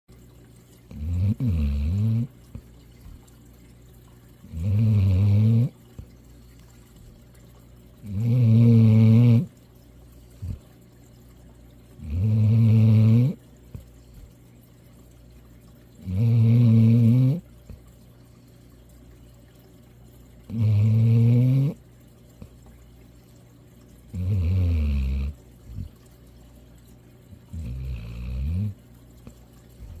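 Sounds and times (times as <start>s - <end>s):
dog snoring: 0.9s - 2.3s, 4.4s - 5.8s, 8.0s - 9.5s, 10.4s - 10.6s, 12.0s - 13.4s, 16.0s - 17.5s, 20.5s - 21.8s, 24.1s - 26.0s, 27.4s - 28.8s, 29.8s - 30.0s.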